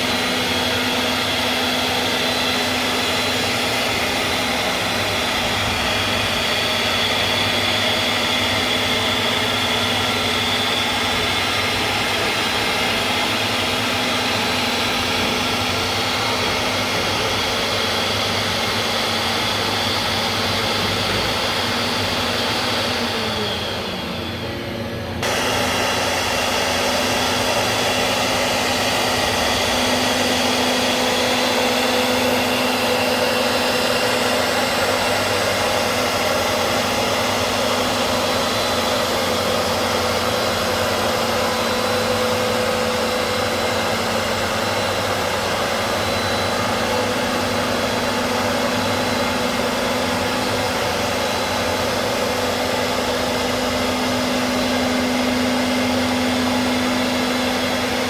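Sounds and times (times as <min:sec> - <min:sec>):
router rushing hum and whine: 0:00.0 - 0:58.0.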